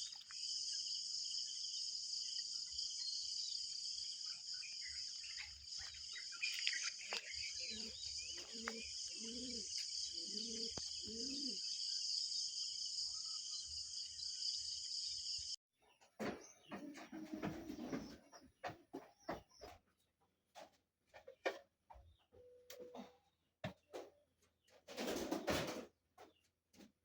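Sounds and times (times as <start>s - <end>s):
crickets chirping: 0.0s - 15.6s.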